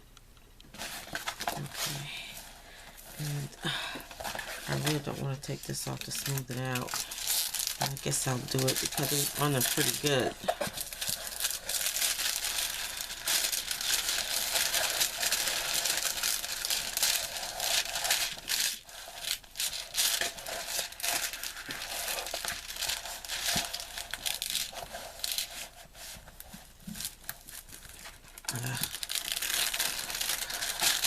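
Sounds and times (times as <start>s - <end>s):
packaging crinkling and rustling: 0.6s - 31.0s.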